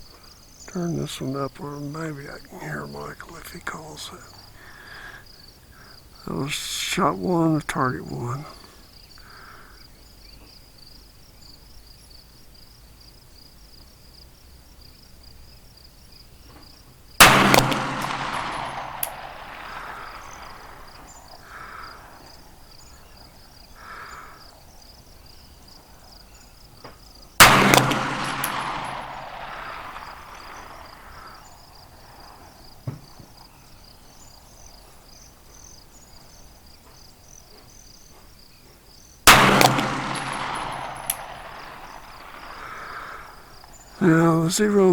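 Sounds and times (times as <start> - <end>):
pistol shots with rolling echo: 17.2 - 24.5, 27.4 - 32.8, 39.2 - 44.9.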